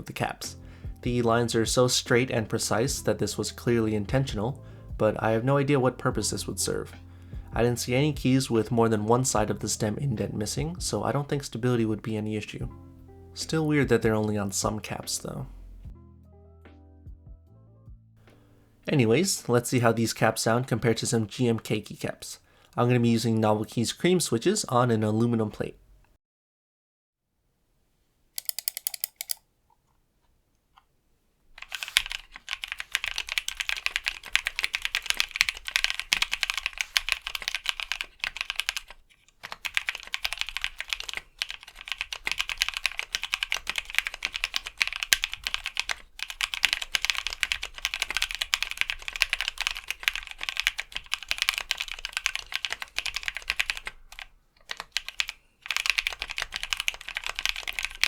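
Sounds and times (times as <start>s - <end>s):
mechanical keyboard typing: 28.4s - 29.4s, 31.6s - 58.0s.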